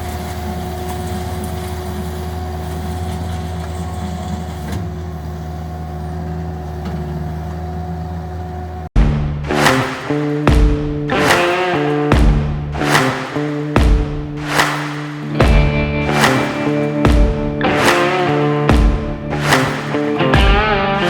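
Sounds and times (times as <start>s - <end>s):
skid steer engine running: 0.0s - 8.9s
loud music: 9.0s - 21.0s.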